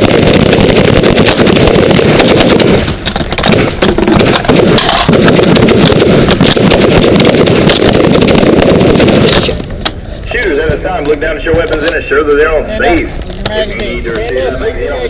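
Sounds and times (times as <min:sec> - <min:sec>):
rifles firing: 0:00.0 - 0:09.8.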